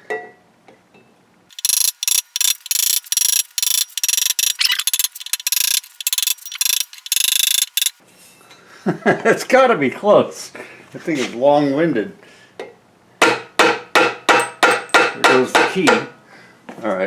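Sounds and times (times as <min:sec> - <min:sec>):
ratchet wrench clicking: 0:01.5 - 0:08.0.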